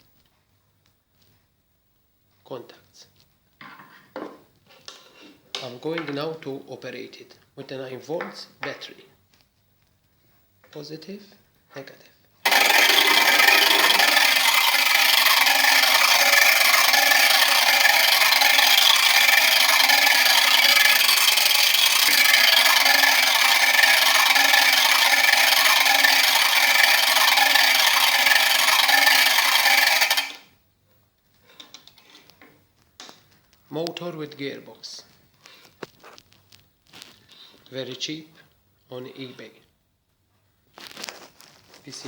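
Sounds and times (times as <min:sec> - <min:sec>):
motorized rotary switch running: 0:12.5 - 0:30.4.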